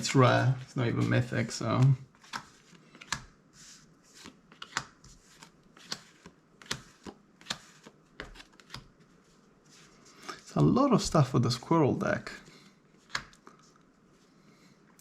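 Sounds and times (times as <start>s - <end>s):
cards being flipped: 0.9s - 3.4s, 4.0s - 9.1s, 12.9s - 13.8s.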